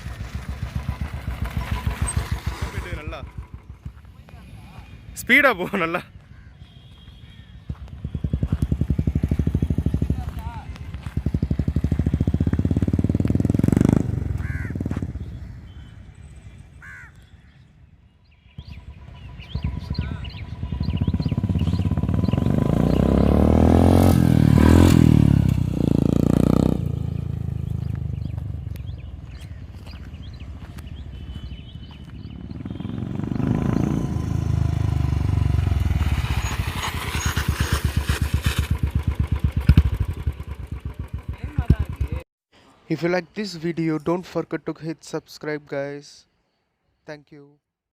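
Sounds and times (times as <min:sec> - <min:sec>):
motorcycle accelerating past: 0:00.0 - 0:04.0, 0:08.0 - 0:15.4, 0:18.6 - 0:29.0, 0:32.1 - 0:42.2
crow cawing: 0:06.2 - 0:07.8, 0:14.4 - 0:14.9, 0:16.8 - 0:17.6, 0:19.9 - 0:20.5.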